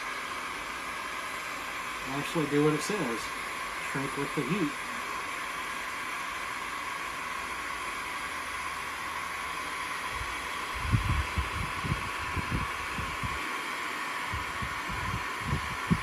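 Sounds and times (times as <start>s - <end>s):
heat gun running: 0.0s - 16.0s.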